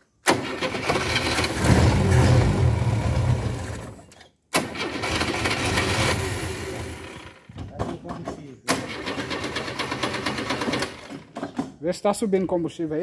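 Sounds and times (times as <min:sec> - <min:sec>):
car engine cranking: 0:00.2 - 0:07.5, 0:08.7 - 0:11.4.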